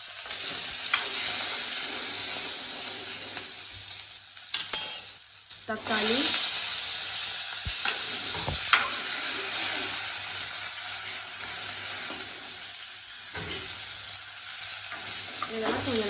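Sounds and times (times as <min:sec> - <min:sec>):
vegetables sizzling in hot oil: 0:00.0 - 0:16.0.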